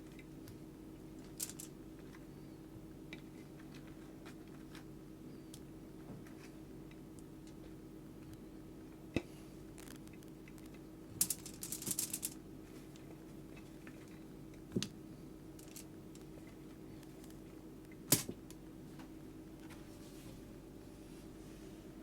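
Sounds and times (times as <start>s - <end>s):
wood fire crackling and popping: 9.7s - 11.4s.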